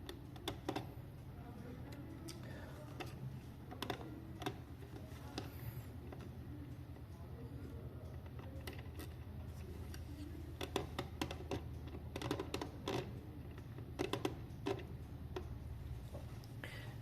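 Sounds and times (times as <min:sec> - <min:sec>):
low steady hum: 0:00.0 - 0:17.0
small clicks of plastic clock handled: 0:01.8 - 0:15.6.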